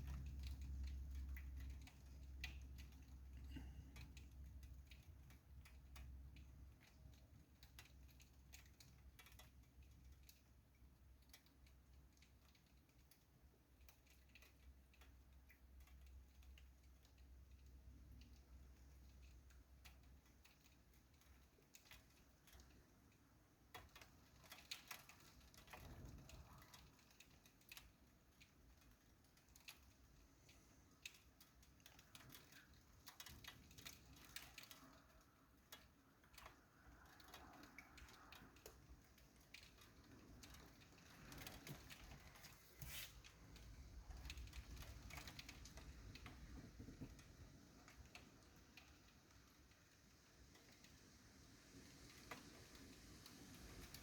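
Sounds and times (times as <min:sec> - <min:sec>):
raindrops tapping: 0:00.0 - 0:54.0.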